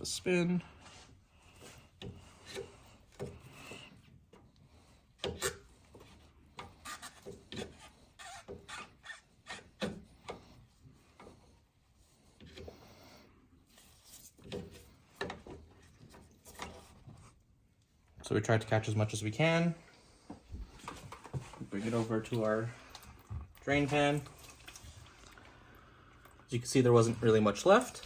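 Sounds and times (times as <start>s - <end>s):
rubber hose scraping on plastic: 5.2s - 11.5s.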